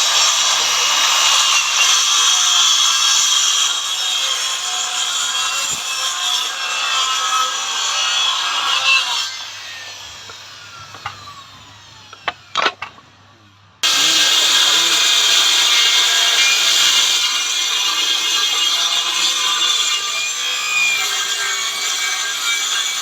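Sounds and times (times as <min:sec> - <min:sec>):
circular saw cutting wood: 0:00.0 - 0:13.0, 0:13.8 - 0:23.0
saw blade winding down: 0:13.8 - 0:23.0.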